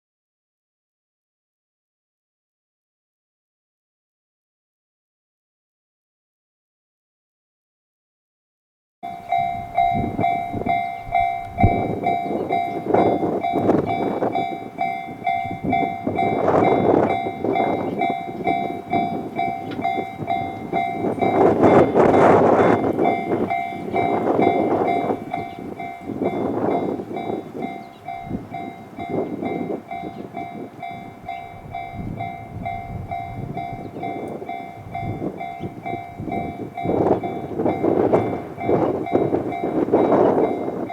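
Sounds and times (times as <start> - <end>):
level crossing warning bell ringing: 9.0 - 40.9
train passing: 9.0 - 40.9.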